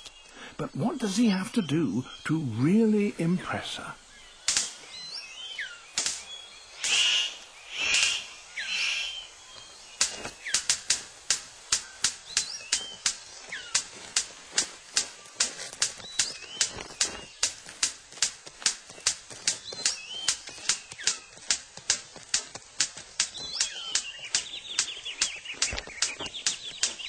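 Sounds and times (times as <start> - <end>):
harsh rasping bird calls: 0.0 - 27.0
sharp bird clicks: 0.0 - 27.0
sliding bird whistles: 4.9 - 9.6, 23.2 - 27.0.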